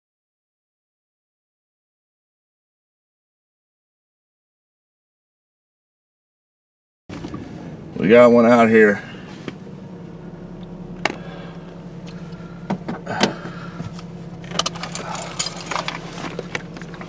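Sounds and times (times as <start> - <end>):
car engine idling: 7.1 - 17.0
jangling clattery rattling: 14.4 - 17.0.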